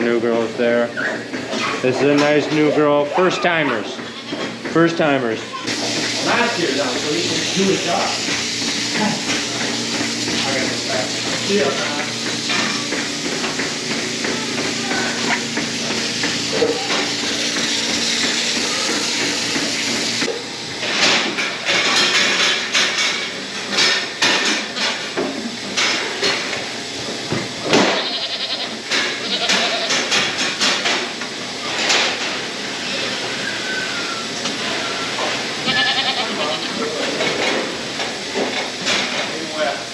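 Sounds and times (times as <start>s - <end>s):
goats bleating: 27.8s - 30.1s, 35.6s - 36.9s.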